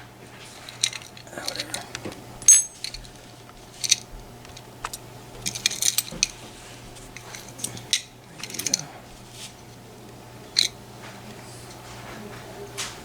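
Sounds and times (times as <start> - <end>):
small metal parts clinking: 0.4 - 6.4, 7.0 - 8.9, 10.5 - 10.8.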